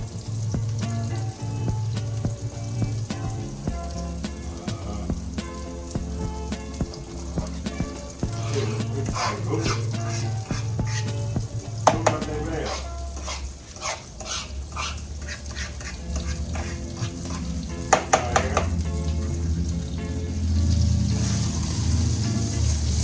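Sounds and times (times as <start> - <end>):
food sizzling in frying pan: 0.0 - 23.0
utensil scraping pan: 8.2 - 18.7.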